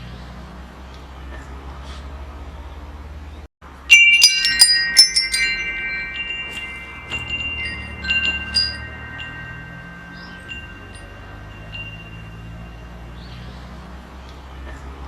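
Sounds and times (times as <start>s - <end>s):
metal wind chimes ringing: 3.7s - 14.1s.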